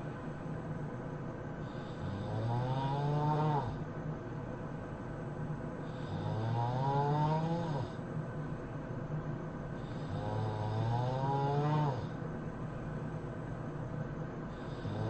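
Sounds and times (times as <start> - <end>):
person snoring: 1.7 - 3.8, 5.9 - 8.0, 9.9 - 12.2, 14.6 - 15.0.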